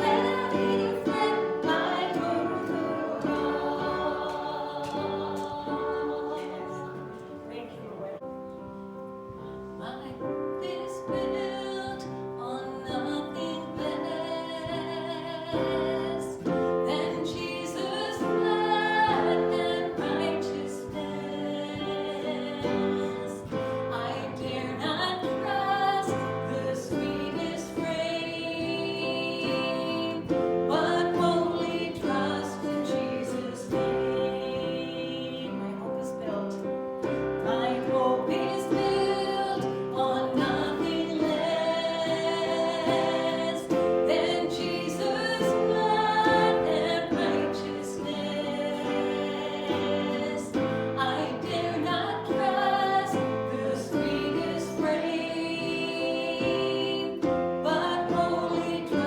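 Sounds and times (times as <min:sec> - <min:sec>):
woman singing: 0:00.0 - 0:08.4, 0:09.3 - 0:59.0.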